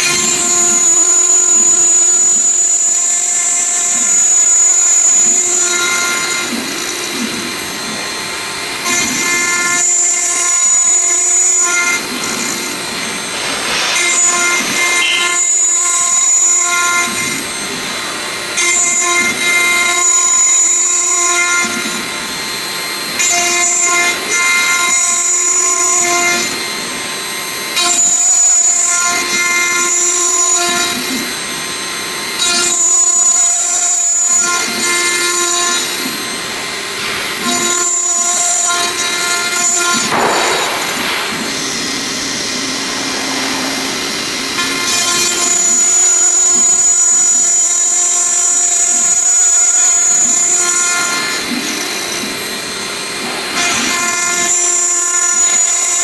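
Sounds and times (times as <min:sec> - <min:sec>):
router spindle whining: 0:00.0 - 0:56.0
high whistle-like cutting tone: 0:09.7 - 0:16.9.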